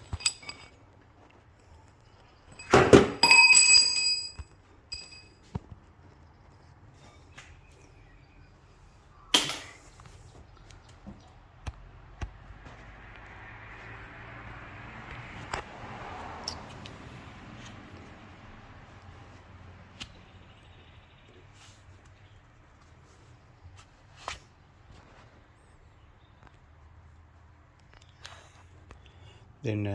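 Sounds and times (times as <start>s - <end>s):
metal on metal clatter: 0.0s - 0.7s, 2.6s - 5.3s, 9.3s - 10.1s
metal tools clanking: 0.0s - 0.8s, 2.5s - 5.3s, 9.3s - 10.1s.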